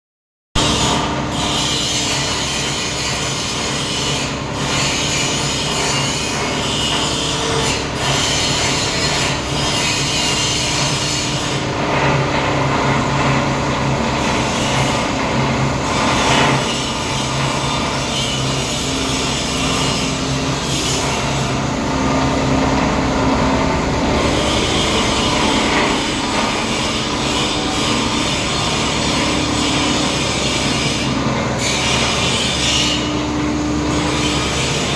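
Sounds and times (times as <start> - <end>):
rasping churn of shredded plastic: 0.6 - 34.9
motor hum: 18.5 - 32.3.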